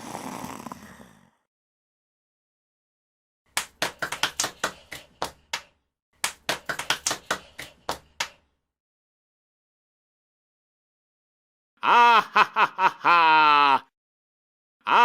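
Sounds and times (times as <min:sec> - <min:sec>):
hands clapping: 0:03.5 - 0:08.5.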